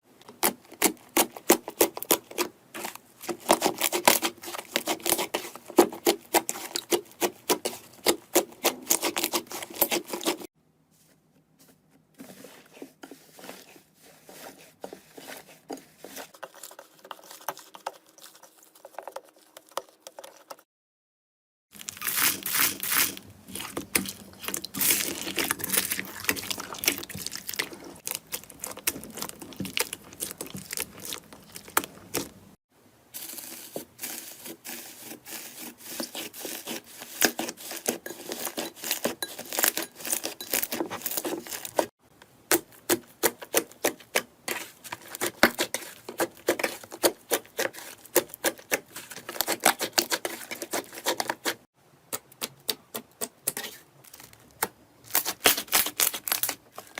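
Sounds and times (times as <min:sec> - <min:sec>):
slime crackling and popping: 0:21.8 - 0:32.4.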